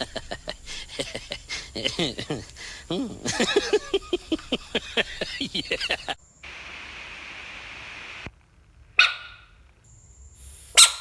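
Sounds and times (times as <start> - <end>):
frog hissing screech: 10.4 - 11.0.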